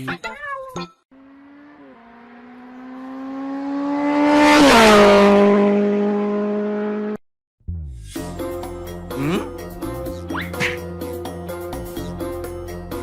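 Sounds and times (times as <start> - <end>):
car passing at speed: 1.2 - 7.2.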